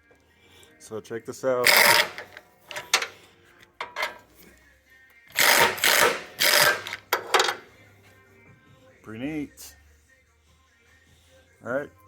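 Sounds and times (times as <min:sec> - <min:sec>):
ratchet wrench clicking: 0:01.6 - 0:03.2, 0:03.8 - 0:04.2, 0:05.3 - 0:07.6.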